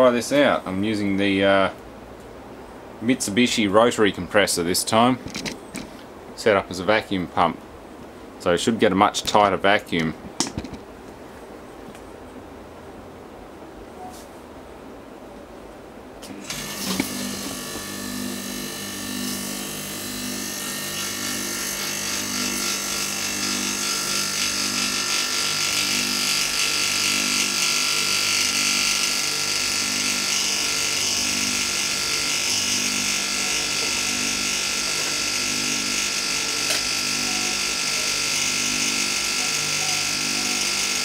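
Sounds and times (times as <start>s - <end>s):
compressor humming: 16.0s - 41.0s.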